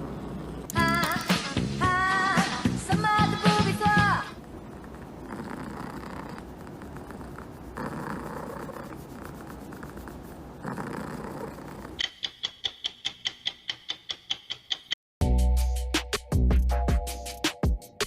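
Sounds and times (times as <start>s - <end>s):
noisy room sound: 0.0s - 12.9s.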